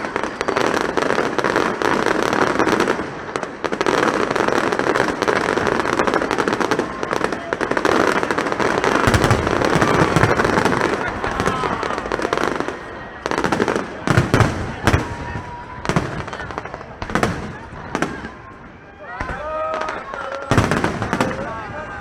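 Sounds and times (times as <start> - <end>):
fireworks crackling: 0.0 - 22.0
deep firework booms: 1.3 - 22.0.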